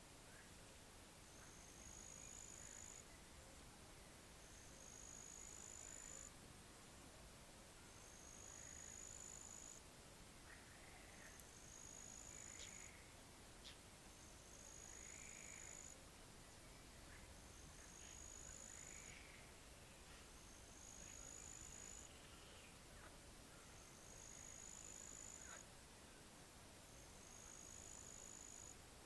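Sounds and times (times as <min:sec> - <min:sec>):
frogs calling softly: 0:01.3 - 0:03.2, 0:04.4 - 0:06.3, 0:07.9 - 0:09.8, 0:10.4 - 0:16.0, 0:16.7 - 0:25.7, 0:26.9 - 0:28.8.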